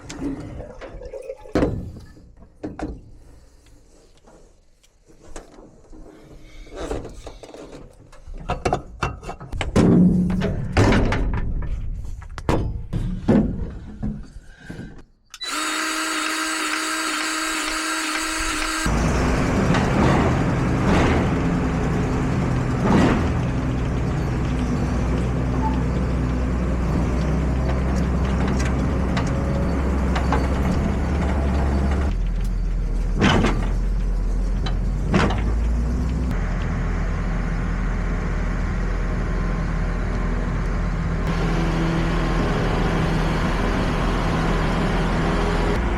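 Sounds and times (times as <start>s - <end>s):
harvester engine running: 15.4s - 45.9s.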